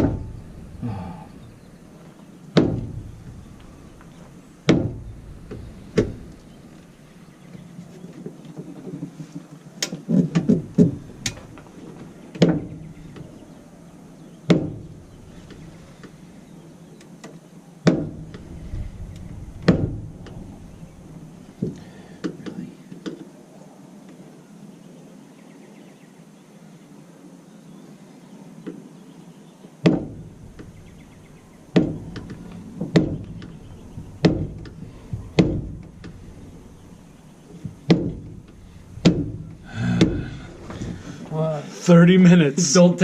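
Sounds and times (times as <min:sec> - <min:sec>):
thumps on steel door: 0:00.0 - 0:00.5, 0:02.5 - 0:03.8, 0:04.7 - 0:06.3, 0:14.5 - 0:15.0, 0:19.2 - 0:20.6, 0:29.9 - 0:30.7, 0:31.8 - 0:33.6, 0:34.2 - 0:36.2, 0:37.6 - 0:40.3.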